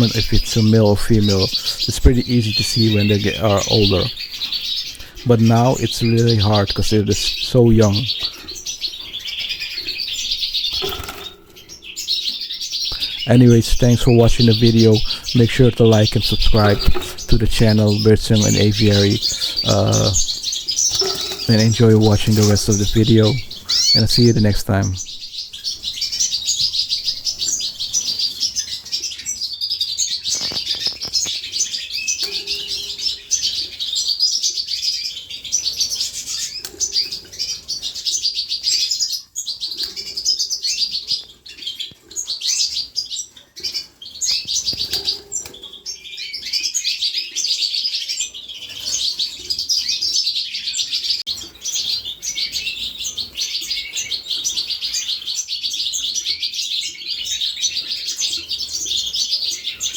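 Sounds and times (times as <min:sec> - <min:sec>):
young canaries chirping: 0:00.0 - 0:59.9.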